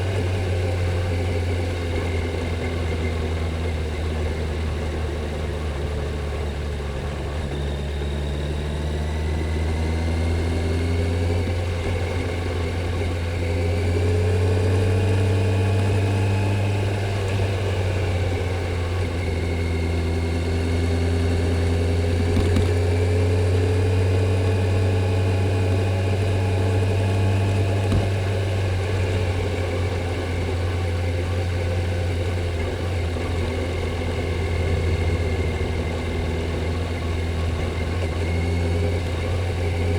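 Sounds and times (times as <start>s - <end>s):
motorcycle engine running: 10.3s - 39.9s.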